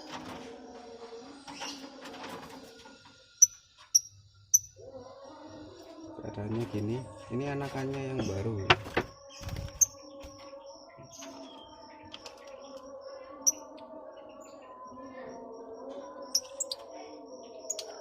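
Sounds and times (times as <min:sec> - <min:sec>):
birds chirping: 0:06.3 - 0:15.0, 0:16.4 - 0:18.0.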